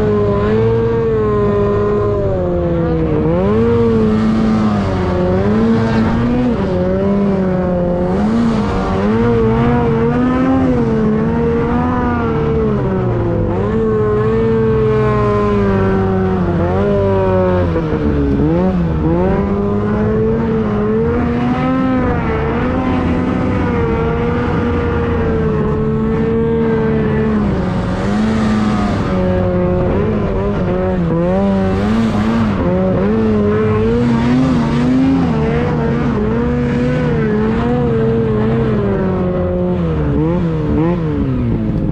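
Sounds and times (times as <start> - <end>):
snowmobile engine running hard: 0.0 - 41.9.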